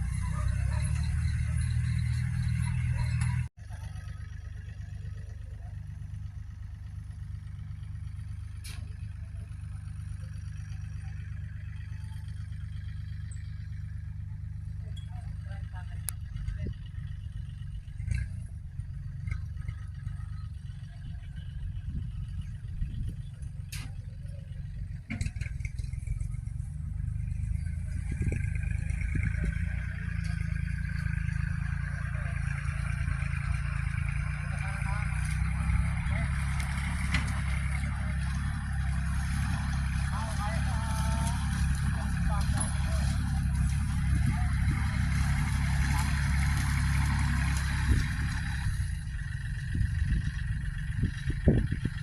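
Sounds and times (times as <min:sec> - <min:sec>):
machinery engine low rumble: 0:00.0 - 0:52.0.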